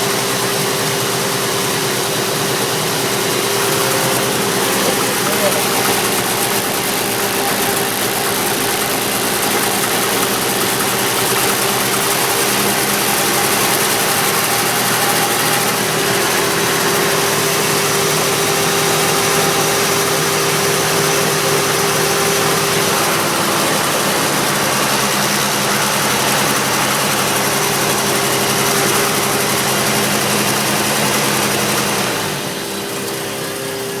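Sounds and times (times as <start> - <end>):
pickup engine idling: 3.3 - 13.5.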